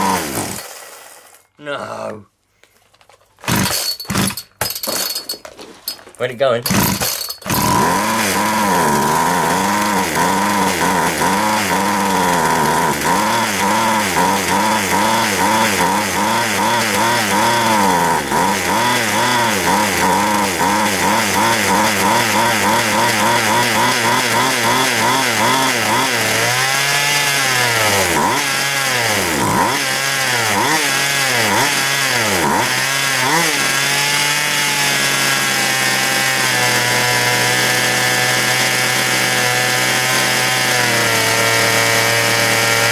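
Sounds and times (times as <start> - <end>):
chainsaw engine revving: 0.0 - 1.6, 3.4 - 5.0, 6.6 - 42.9.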